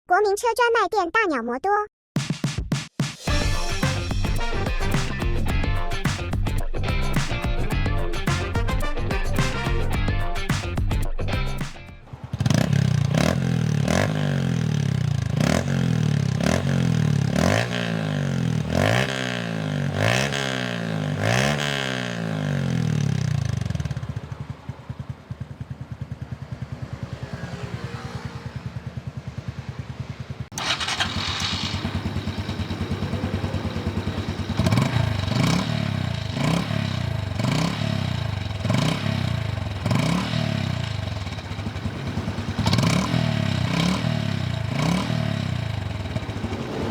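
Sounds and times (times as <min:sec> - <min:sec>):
motorcycle engine revving and idling: 0:12.0 - 0:46.9.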